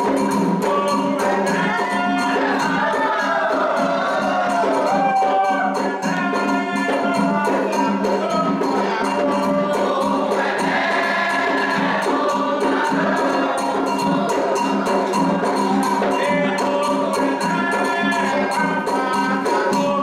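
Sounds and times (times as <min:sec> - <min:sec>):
fast drums and percussion: 0:00.0 - 0:20.0
group of voices chanting: 0:00.2 - 0:20.0.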